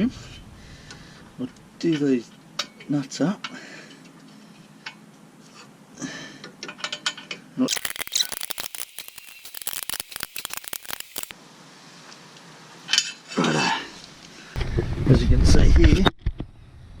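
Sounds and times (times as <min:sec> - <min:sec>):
ratchet wrench clicking: 0:07.7 - 0:11.3.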